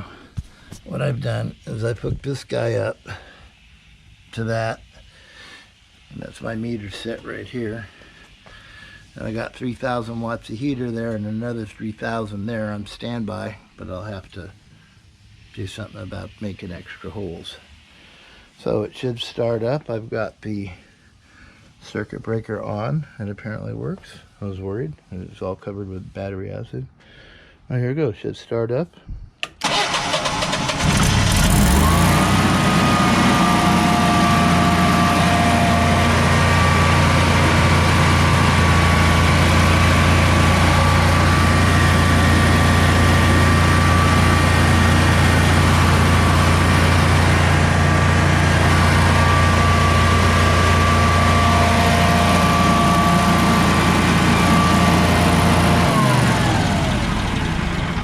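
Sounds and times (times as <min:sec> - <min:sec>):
generator engine cranking and running: 0:29.4 - 0:58.0.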